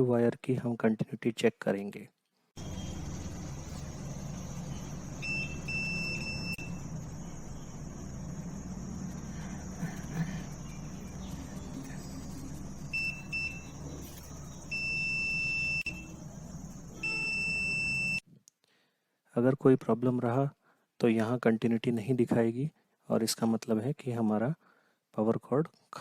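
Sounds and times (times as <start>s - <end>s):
steady low hum: 2.6s - 18.2s
multimeter beeping: 5.2s - 6.8s, 12.8s - 16.2s, 17.0s - 18.2s.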